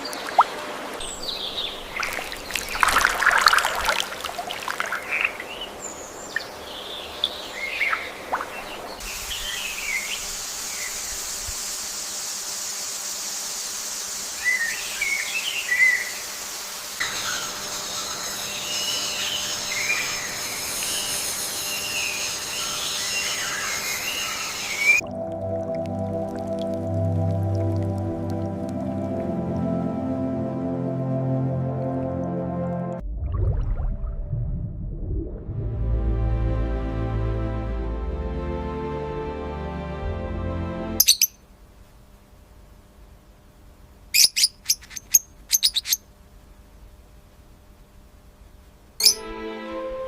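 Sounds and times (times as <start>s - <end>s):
birds chirping: 0.0s - 11.1s, 17.0s - 25.0s, 41.0s - 41.4s, 44.1s - 46.0s, 49.0s - 49.3s
steady background hiss: 0.0s - 25.0s, 40.8s - 50.0s
music: 25.0s - 33.1s, 35.4s - 41.0s, 49.0s - 50.0s.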